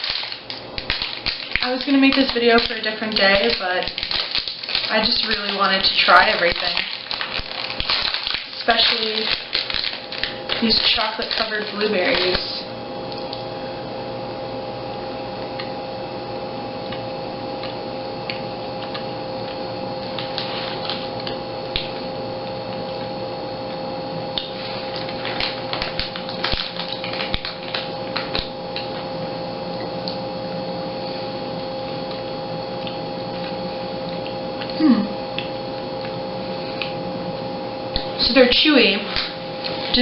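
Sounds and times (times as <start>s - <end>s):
plastic snack bag crinkling: 0.0s - 13.4s, 20.0s - 22.0s, 24.4s - 29.1s, 38.0s - 40.0s
steady electrical hum: 0.0s - 40.0s.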